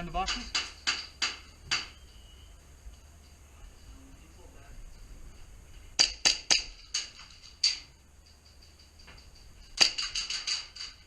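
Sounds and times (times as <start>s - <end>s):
airsoft guns firing: 6.0s - 7.9s, 9.8s - 11.0s.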